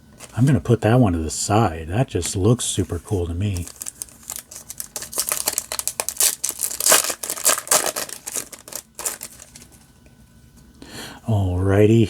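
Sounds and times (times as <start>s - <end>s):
foil wrapper crinkling and tearing: 2.8s - 9.9s.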